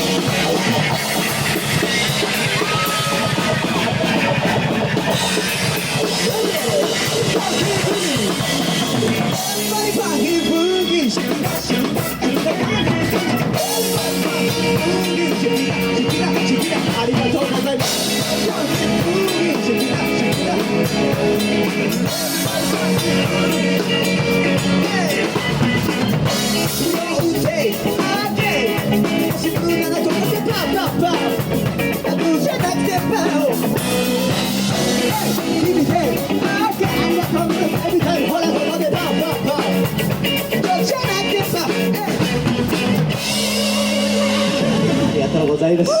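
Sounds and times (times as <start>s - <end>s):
person singing: 0.0s - 25.6s, 26.5s - 42.3s, 43.2s - 46.0s
drum kit beat: 0.0s - 46.0s
live rock band playing: 0.0s - 46.0s.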